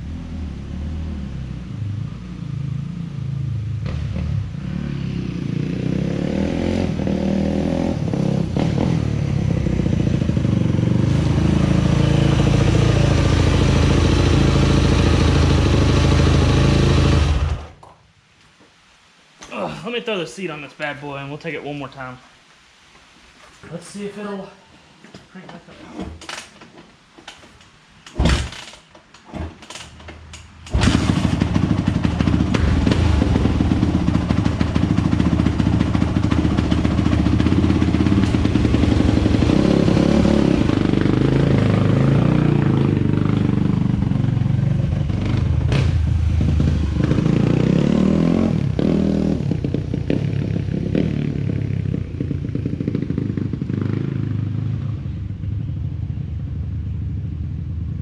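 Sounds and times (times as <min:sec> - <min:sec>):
dirt bike engine running: 0:07.0 - 0:17.8, 0:30.7 - 0:55.3.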